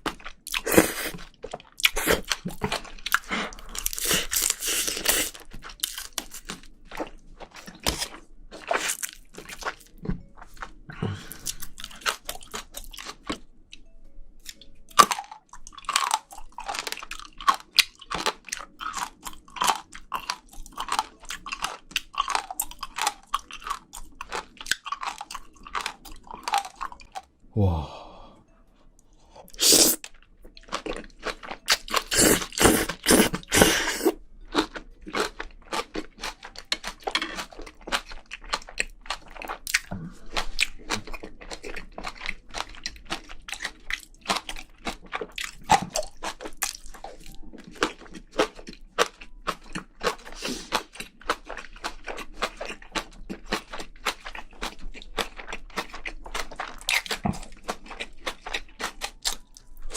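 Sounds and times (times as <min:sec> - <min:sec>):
close chewing and crunching: 0:00.0 - 0:27.3, 0:29.5 - 0:59.9.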